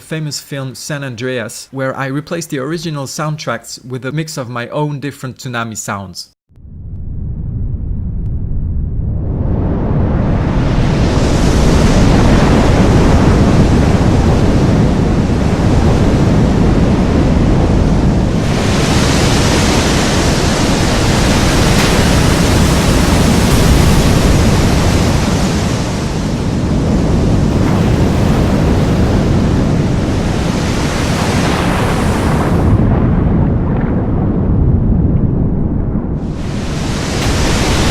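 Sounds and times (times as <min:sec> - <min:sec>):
heavy low rumble: 0:06.5 - 0:37.9
rushing surging water: 0:18.3 - 0:26.1, 0:36.3 - 0:37.9.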